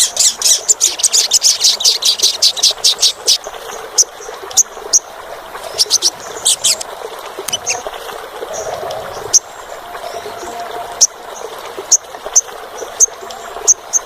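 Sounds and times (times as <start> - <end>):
bird chirping: 0.0 - 6.8, 7.5 - 14.0.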